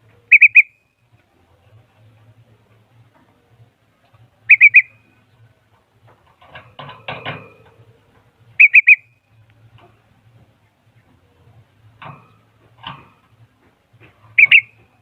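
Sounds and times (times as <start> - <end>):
soft scratchy bird call: 0.2 - 0.9, 4.5 - 5.2, 8.6 - 9.1, 14.3 - 14.9
bird whistled call: 0.3 - 0.8, 4.5 - 5.0, 8.6 - 9.2, 14.4 - 14.8.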